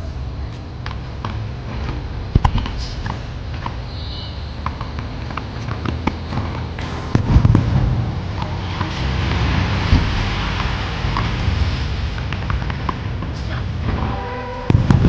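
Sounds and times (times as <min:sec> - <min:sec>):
low rumble: 0:00.0 - 0:15.0
fireworks cracks and bangs: 0:06.2 - 0:15.0
loud fireworks booms: 0:06.2 - 0:15.0.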